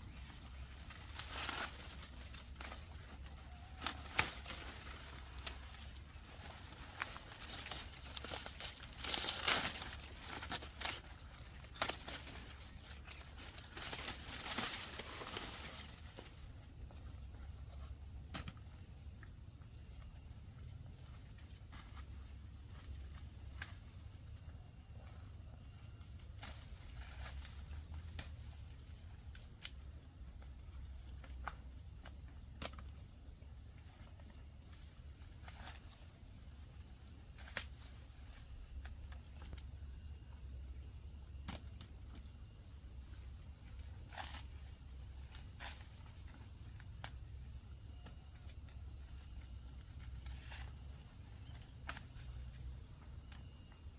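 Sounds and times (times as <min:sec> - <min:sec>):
dry leaves rustling and crinkling: 0:00.0 - 0:17.8, 0:25.9 - 0:31.4, 0:42.6 - 0:53.9.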